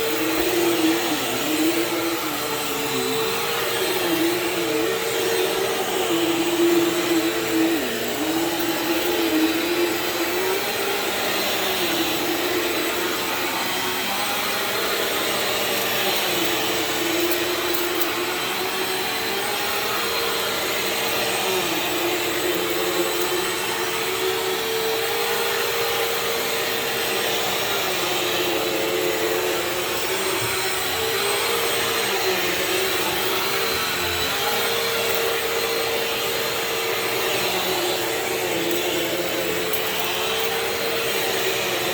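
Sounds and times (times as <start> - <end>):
vacuum cleaner on carpet: 0.0 - 41.9.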